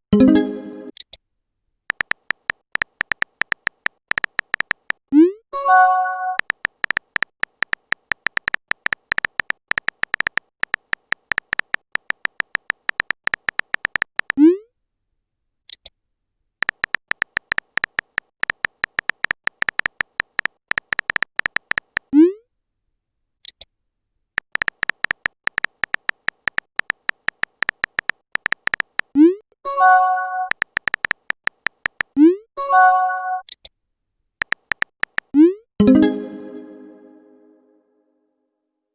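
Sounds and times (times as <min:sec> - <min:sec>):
keyboard typing clicks: 0:01.9 - 0:05.0, 0:05.7 - 0:14.4, 0:16.6 - 0:22.1, 0:24.4 - 0:32.3, 0:34.4 - 0:37.1.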